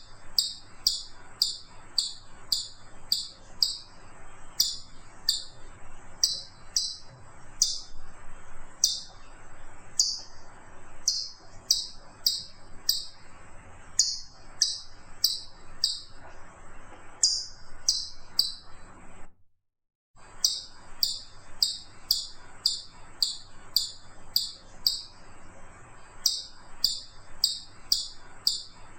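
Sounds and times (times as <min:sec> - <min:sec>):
chipmunk chip call: 0:00.4 - 0:03.9, 0:04.6 - 0:05.5, 0:06.2 - 0:07.9, 0:08.8 - 0:09.1, 0:11.1 - 0:13.2, 0:14.0 - 0:16.1, 0:20.4 - 0:25.1, 0:26.2 - 0:28.7.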